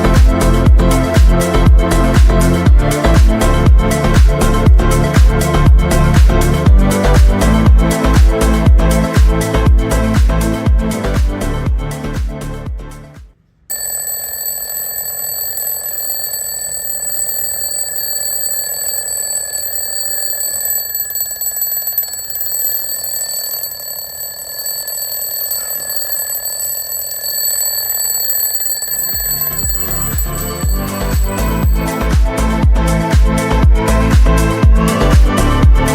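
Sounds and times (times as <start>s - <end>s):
alarm clock bell ringing: 13.7s - 32.2s.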